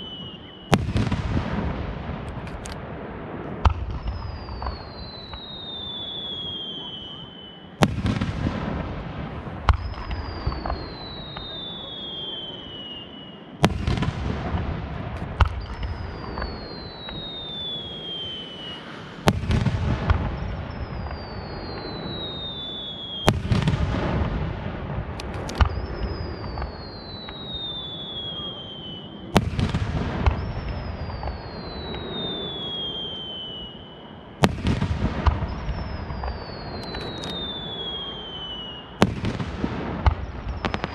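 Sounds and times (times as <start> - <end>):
descending firework whistle: 0.0 - 2.3, 3.4 - 40.9
fireworks bangs: 0.0 - 40.9
fireworks crackling: 0.0 - 40.9.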